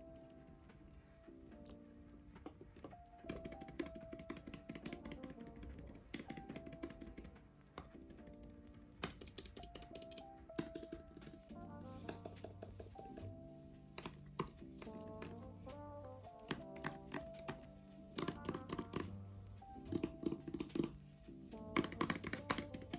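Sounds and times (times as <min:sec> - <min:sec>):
background music: 0:00.0 - 0:22.9
keyboard key clicks: 0:02.4 - 0:13.4, 0:14.0 - 0:15.4, 0:16.4 - 0:19.2, 0:19.8 - 0:21.0, 0:21.6 - 0:22.9.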